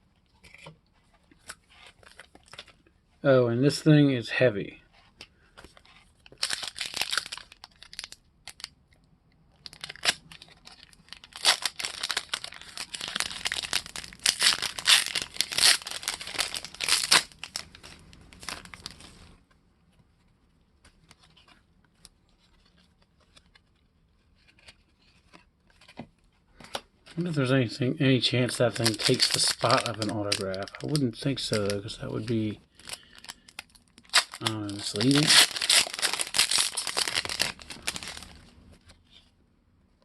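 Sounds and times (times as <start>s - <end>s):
plastic wrapper tearing and crinkling: 1.4s - 2.8s, 6.1s - 8.8s, 9.5s - 19.4s, 28.2s - 38.6s.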